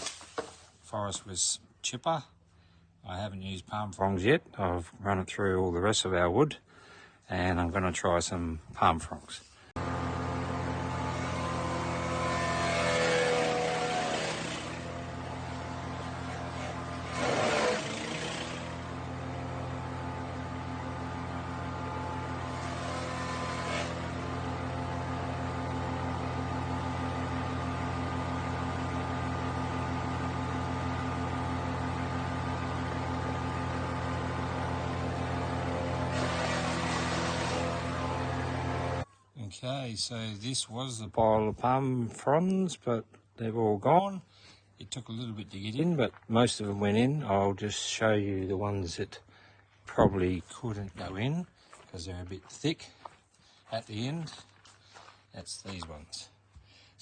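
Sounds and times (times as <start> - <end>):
wood chipper chipping fronds: 0.0 - 0.8, 9.8 - 39.1.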